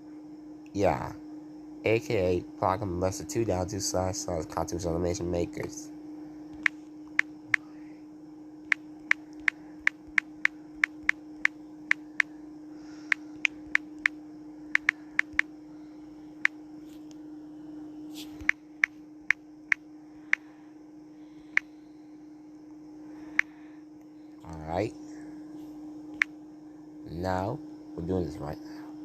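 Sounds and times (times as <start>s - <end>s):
steady hum: 0.0s - 29.0s
phone keyboard clicks: 14.8s - 15.5s.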